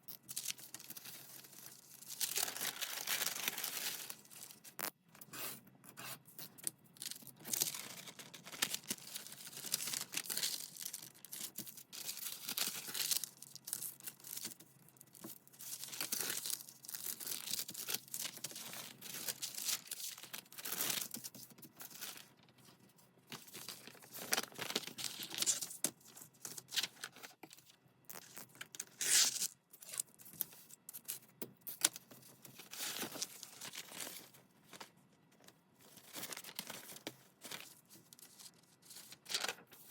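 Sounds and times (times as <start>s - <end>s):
paper crinkling: 31.8s - 39.9s.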